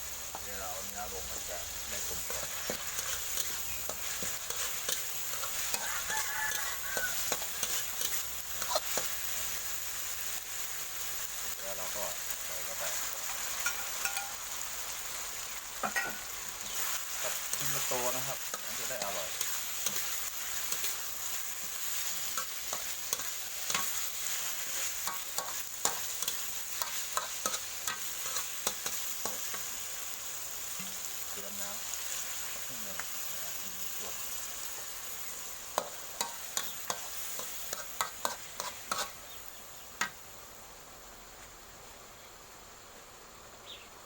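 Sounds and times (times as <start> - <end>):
paste sizzling in a hot pan: 0.0 - 44.0
spatula scraping a pan: 1.8 - 9.2, 15.8 - 29.8, 35.8 - 39.3.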